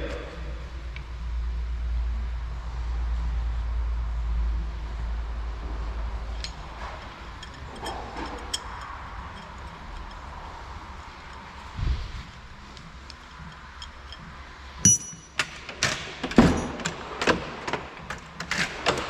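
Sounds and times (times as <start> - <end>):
light metallic clicks and clinks: 6.3 - 11.8, 12.4 - 17.1.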